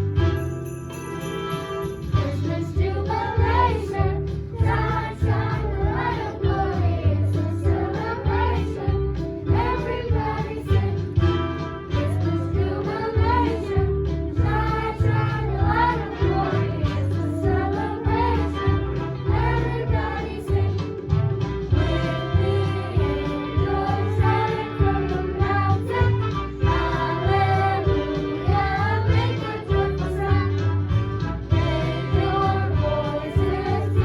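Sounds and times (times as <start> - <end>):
instrumental accompaniment: 0.0 - 34.0
pulsing bass line: 2.2 - 34.0
children singing together: 2.3 - 11.3, 12.0 - 21.0, 21.8 - 30.9, 31.6 - 34.0.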